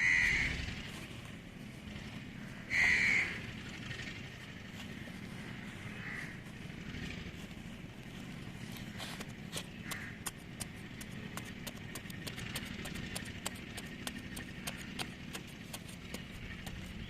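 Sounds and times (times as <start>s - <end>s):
engine running: 0.0s - 17.0s
sharp clicks and knocks: 9.2s - 17.0s.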